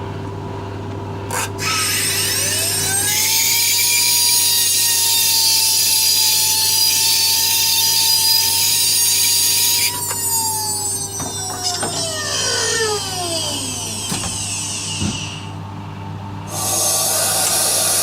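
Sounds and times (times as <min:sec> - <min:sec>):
turbocharger whine: 0:08.0 - 0:15.7
loud rushing hiss: 0:16.5 - 0:18.0.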